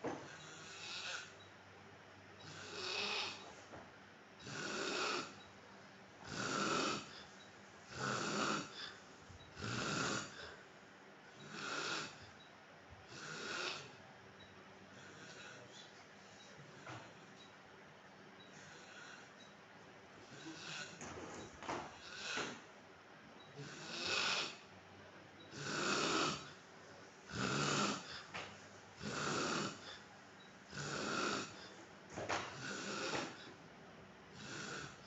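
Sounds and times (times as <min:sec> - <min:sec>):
man snoring: 0:00.2 - 0:01.3, 0:02.4 - 0:03.5, 0:04.4 - 0:05.4, 0:06.2 - 0:07.3, 0:07.9 - 0:10.6, 0:11.4 - 0:12.3, 0:13.1 - 0:14.0, 0:15.0 - 0:15.6, 0:20.3 - 0:21.1, 0:22.0 - 0:22.6, 0:23.5 - 0:24.7, 0:25.5 - 0:26.6, 0:27.3 - 0:28.3, 0:29.0 - 0:30.0, 0:30.7 - 0:31.7, 0:32.5 - 0:33.5, 0:34.4 - 0:35.0.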